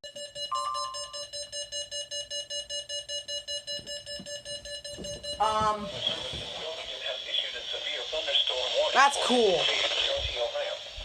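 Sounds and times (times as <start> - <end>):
pulsing electronic alarm tone: 0.0 - 6.0.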